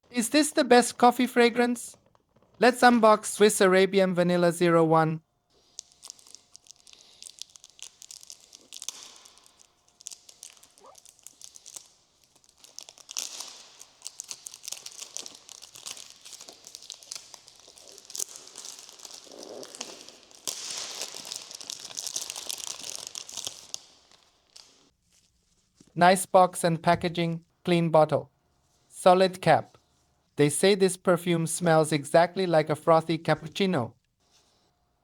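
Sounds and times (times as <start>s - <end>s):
packaging crinkling and tearing: 5.5s - 25.8s.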